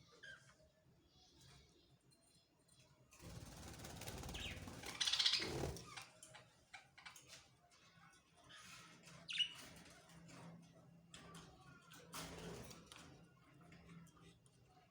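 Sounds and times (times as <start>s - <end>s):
wings fluttering and rustling: 3.1s - 7.5s
budgies chirping: 3.6s - 6.0s.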